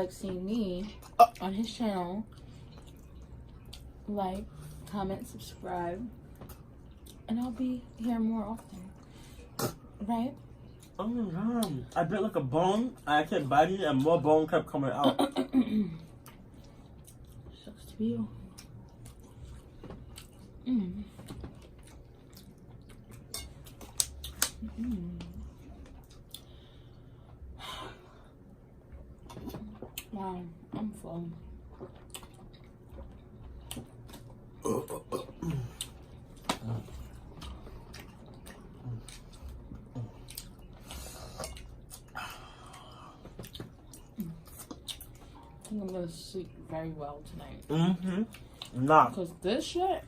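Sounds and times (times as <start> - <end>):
chewing: 2.2 - 4.6, 16.1 - 17.6, 18.5 - 27.4, 31.7 - 46.0
person humming: 24.6 - 25.4.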